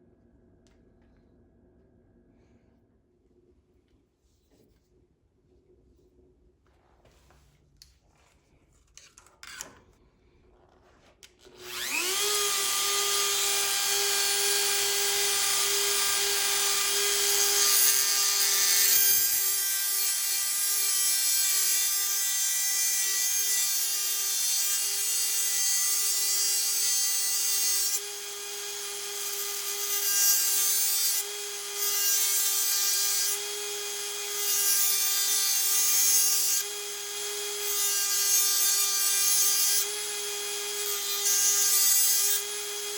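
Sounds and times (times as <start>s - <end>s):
rotary tool whine: 11.4s - 20.3s
rotary tool grinding metal: 11.4s - 42.9s.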